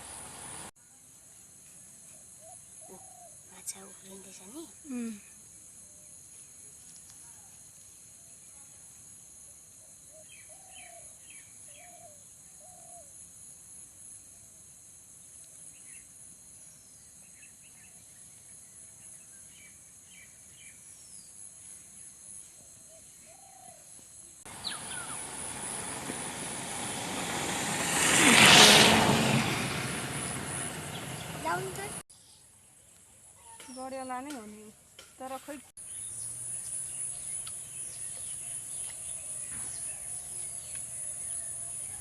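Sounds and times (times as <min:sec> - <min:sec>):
high insect drone: 0:24.4 - 0:32.0
birds chirping: 0:24.5 - 0:32.0
broad rushing noise: 0:24.5 - 0:32.0.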